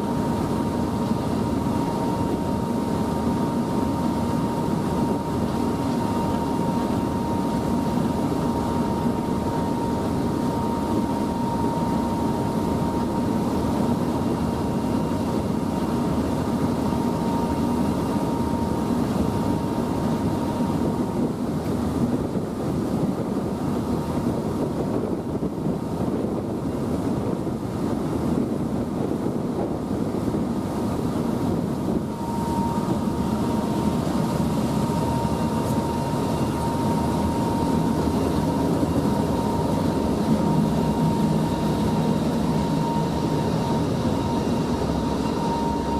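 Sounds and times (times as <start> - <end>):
thin steady whine: 0.0 - 45.9
ferry engines droning: 31.1 - 45.9.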